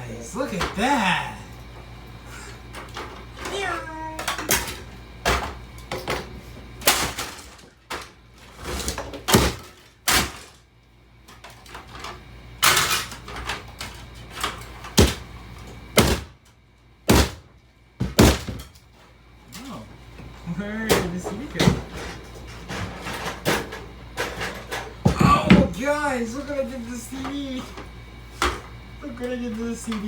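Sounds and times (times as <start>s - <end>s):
hard blows smashing cd player: 6.8s - 10.6s, 18.0s - 18.7s.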